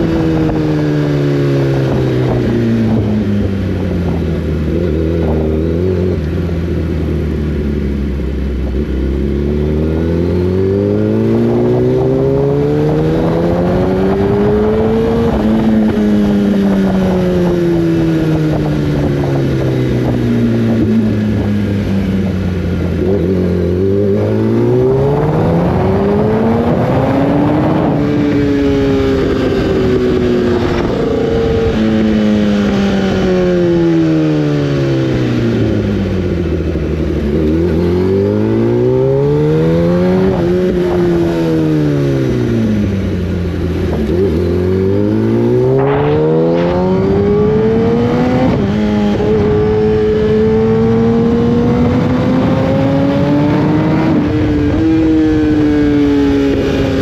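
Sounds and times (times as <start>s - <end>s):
wind rush: 0.0s - 6.9s, 9.8s - 57.0s
motorcycle engine revving: 0.0s - 57.0s.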